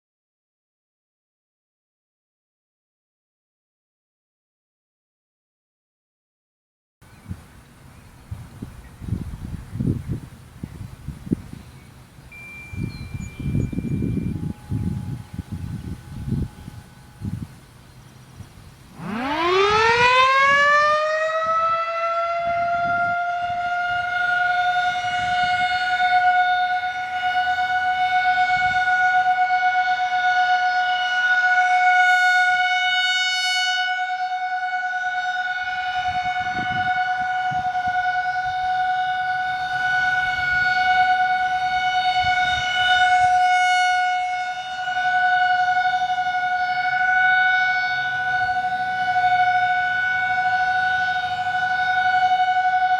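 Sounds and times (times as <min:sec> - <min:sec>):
warning siren winding up: 0:12.3 - 0:18.3, 0:18.9 - 0:52.9.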